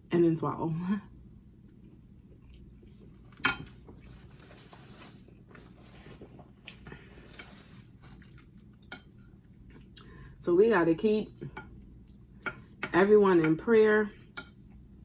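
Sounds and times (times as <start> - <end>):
soft chewing: 1.6 - 10.3.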